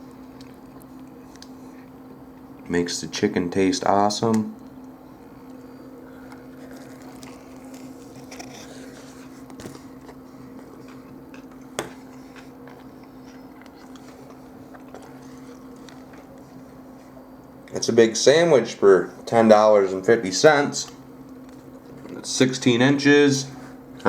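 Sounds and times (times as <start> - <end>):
man chewing food: 0.0 - 2.7, 4.6 - 17.7.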